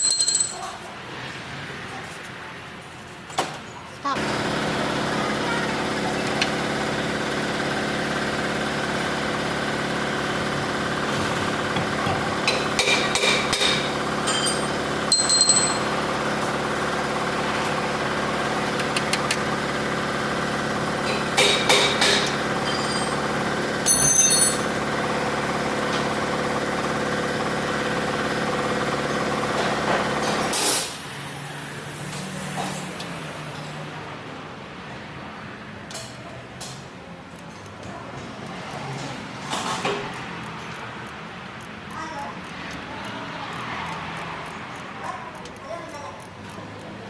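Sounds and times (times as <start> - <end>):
tools tapping on metal: 0.0 - 0.8, 11.7 - 15.9, 21.0 - 23.2, 23.8 - 24.8
engine idling: 4.2 - 32.0.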